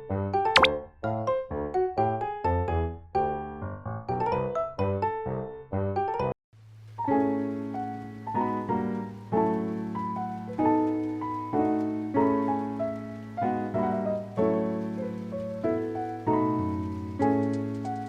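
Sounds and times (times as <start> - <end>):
slow piano piece: 7.0 - 18.0.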